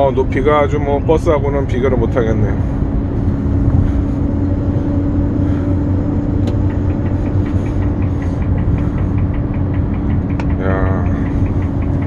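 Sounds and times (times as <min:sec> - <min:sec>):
diesel engine rumble: 0:00.0 - 0:12.0
fast light ticking: 0:06.3 - 0:12.0.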